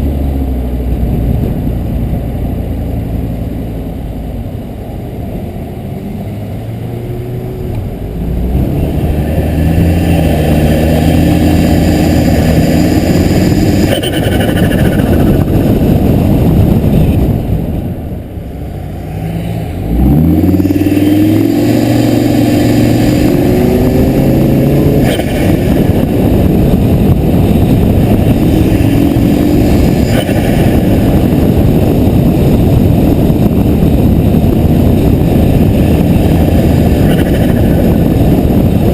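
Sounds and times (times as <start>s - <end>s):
car engine accelerating hard: 0.0s - 38.9s
turbo compressor fluttering: 20.4s - 38.9s.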